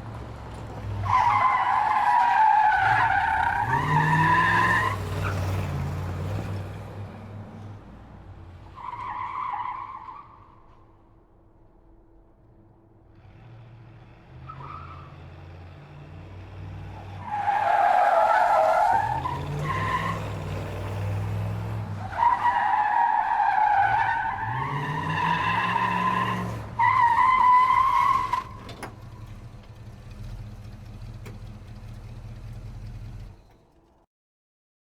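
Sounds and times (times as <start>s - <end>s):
car engine revving: 24.3s - 33.6s.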